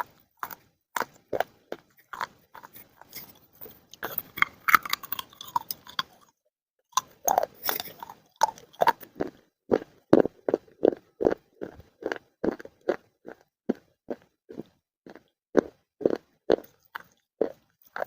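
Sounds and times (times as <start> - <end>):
crunchy chewing: 0.0 - 18.0.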